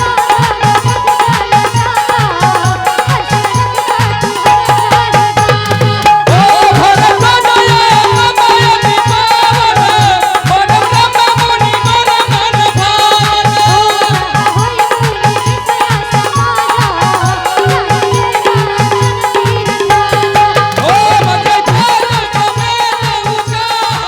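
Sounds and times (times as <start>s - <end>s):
hand drums beating: 0.0s - 24.0s.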